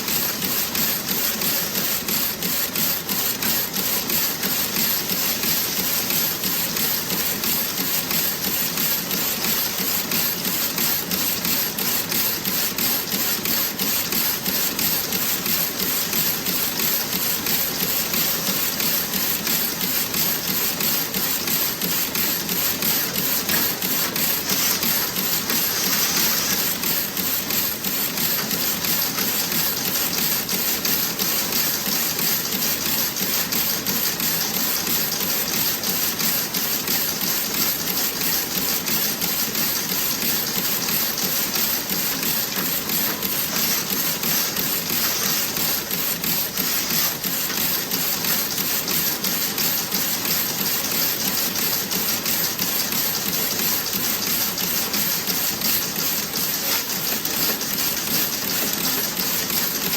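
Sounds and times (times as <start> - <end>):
knitting machine clattering: 21.8 - 30.0.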